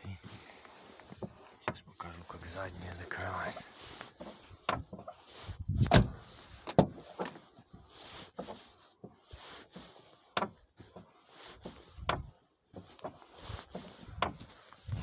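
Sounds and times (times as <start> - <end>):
car door creaking: 5.7 - 7.4
car door knocking shut: 5.9 - 6.2.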